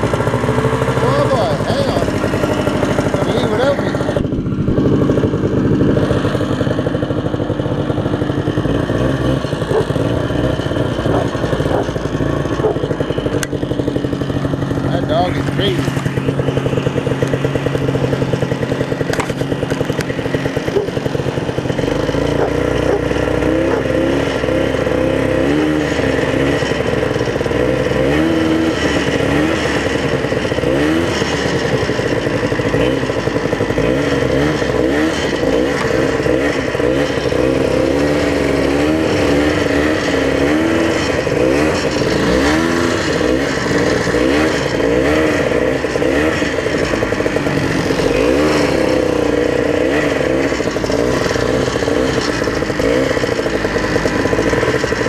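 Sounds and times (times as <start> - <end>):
snowmobile engine running: 0.0 - 55.0.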